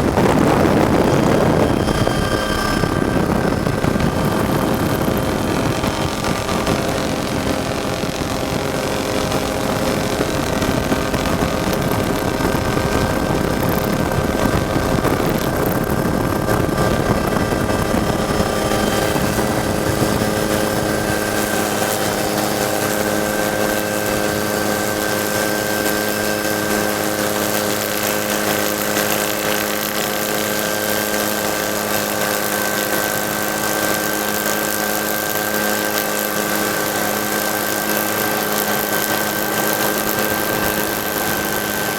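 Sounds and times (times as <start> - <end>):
vehicle engine running: 0.0 - 41.9.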